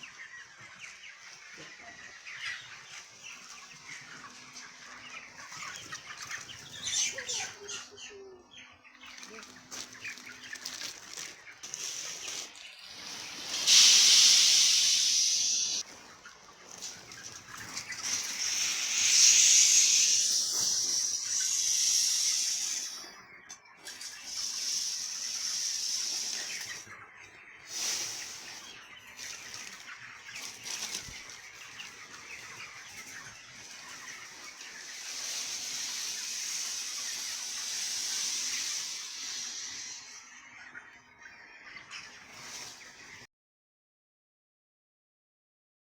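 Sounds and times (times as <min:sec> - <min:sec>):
chickens clucking: 0:00.0 - 0:43.3
steady high hiss: 0:12.1 - 0:15.8, 0:18.0 - 0:23.2, 0:24.0 - 0:26.8, 0:34.6 - 0:40.2.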